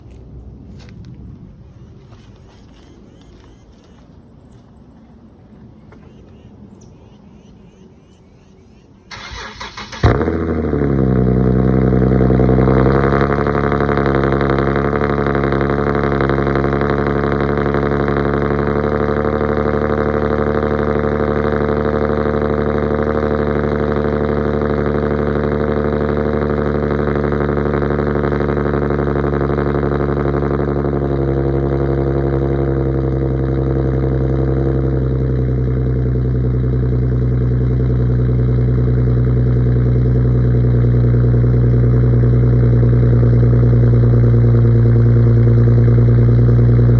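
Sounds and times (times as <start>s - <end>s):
car engine fast idle: 9.1s - 46.9s.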